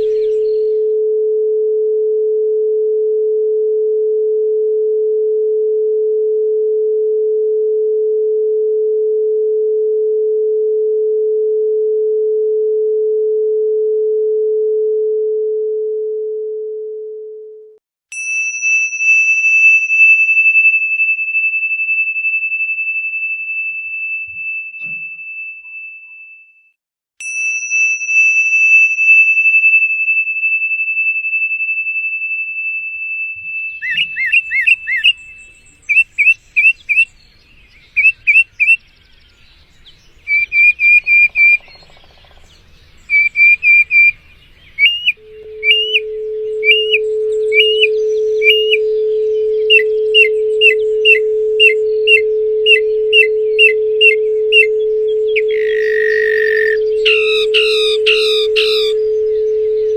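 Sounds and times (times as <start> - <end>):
high bell-like tone ringing: 18.1 - 35.6, 45.1 - 59.9
steady pure tone: 43.2 - 59.9.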